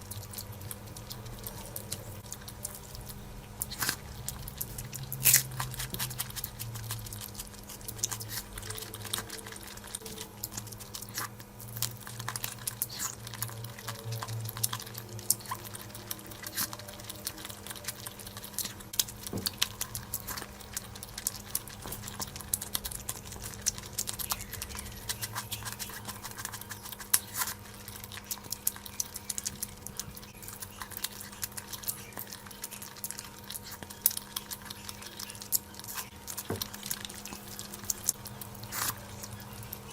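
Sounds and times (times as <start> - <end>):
faint steady hum: 0.0 - 39.9
wet chewing: 0.0 - 39.9.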